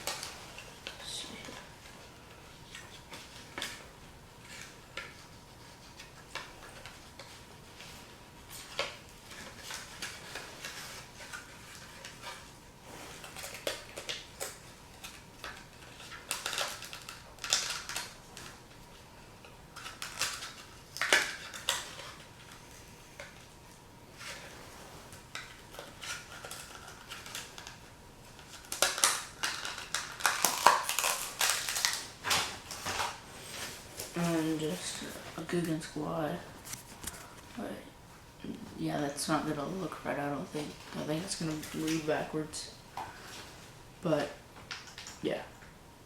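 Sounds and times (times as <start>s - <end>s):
plastic packaging rustling: 0.0s - 37.7s
small plastic items clicking and rattling: 13.3s - 18.5s, 28.4s - 33.1s.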